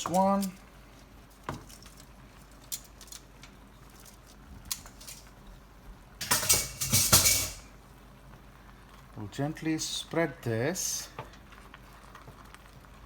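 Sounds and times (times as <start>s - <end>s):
scraping and clattering in pot: 1.3s - 5.4s, 6.2s - 7.7s
utensil clinking against pot: 6.2s - 7.7s.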